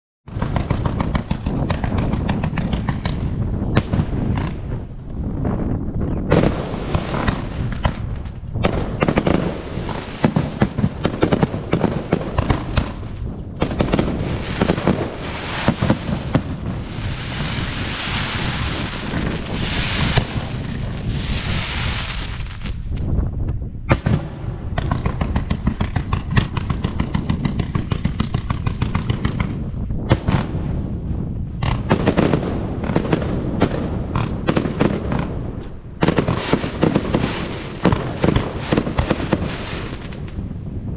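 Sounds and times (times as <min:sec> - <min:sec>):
fireworks bursting: 0:00.3 - 0:05.0, 0:06.3 - 0:23.0, 0:23.9 - 0:30.8, 0:31.6 - 0:40.6
hissing crackle of fireworks: 0:06.3 - 0:22.9, 0:36.0 - 0:40.5.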